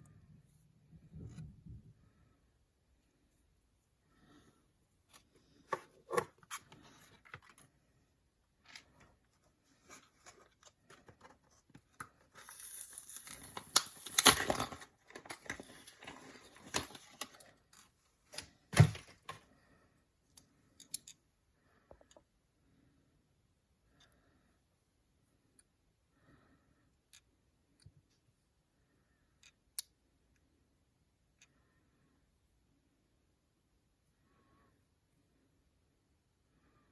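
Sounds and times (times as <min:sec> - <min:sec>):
packaging tearing and crinkling: 0:12.4 - 0:17.3.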